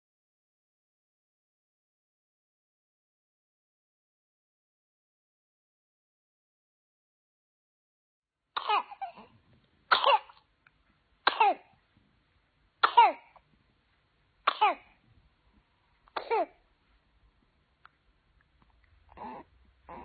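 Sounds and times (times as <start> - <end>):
baby coughing: 8.6 - 10.4, 11.2 - 11.7, 12.8 - 13.4, 14.4 - 14.9, 16.1 - 16.6, 19.1 - 20.0.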